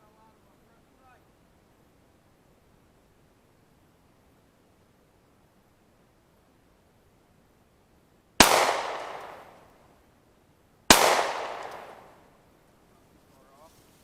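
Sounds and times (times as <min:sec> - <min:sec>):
pistol shots with echo: 0:08.4 - 0:09.6, 0:10.9 - 0:12.2.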